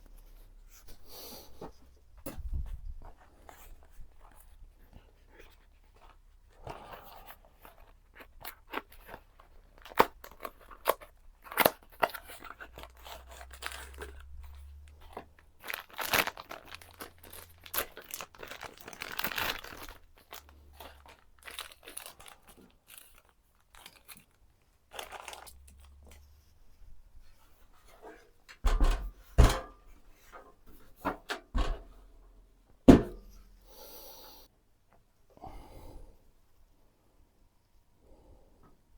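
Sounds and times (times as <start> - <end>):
packaging rustling and tearing: 7.1 - 26.3.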